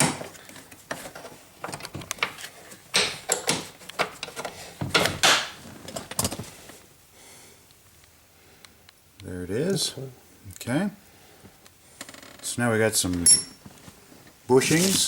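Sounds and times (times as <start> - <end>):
metal clicks and knocks: 0.9 - 6.4.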